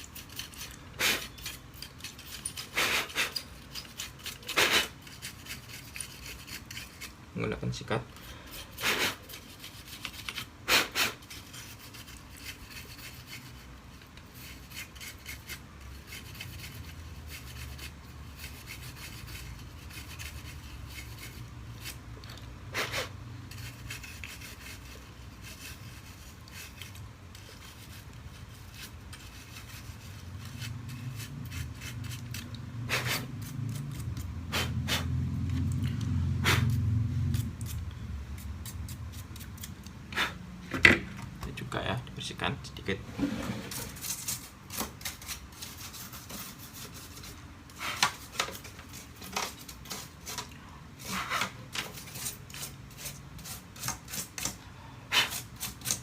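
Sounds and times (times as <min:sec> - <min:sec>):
brush bristles rubbing plastic: 0:00.0 - 0:40.4, 0:43.0 - 0:56.0.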